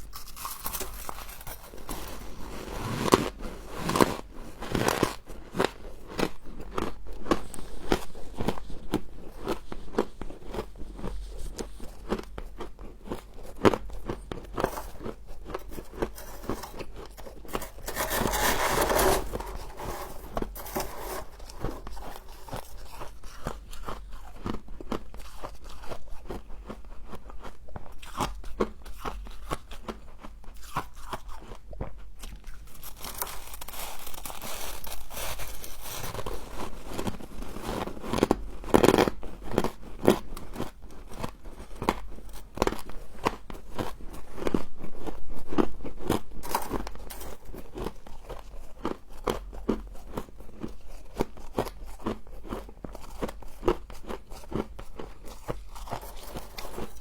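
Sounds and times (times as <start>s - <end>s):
crunching frost being chewed: 0.0s - 57.0s.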